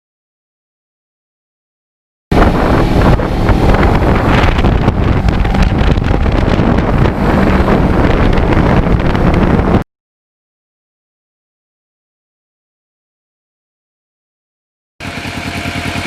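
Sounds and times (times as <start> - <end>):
low motorcycle engine note: 2.3 - 9.8, 15.0 - 16.0
wind buffeting microphone: 2.3 - 9.8.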